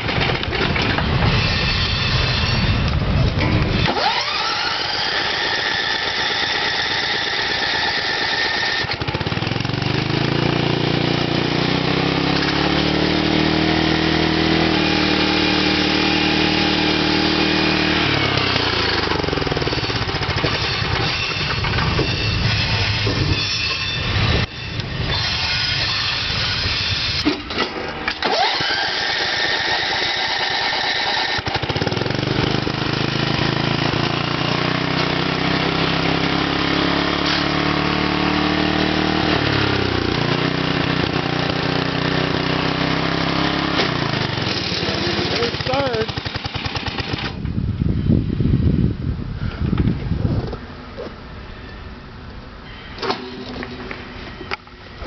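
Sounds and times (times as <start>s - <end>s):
high-pitched whine: 1.0s - 9.0s, 13.2s - 27.5s
small engine revving: 3.4s - 47.5s.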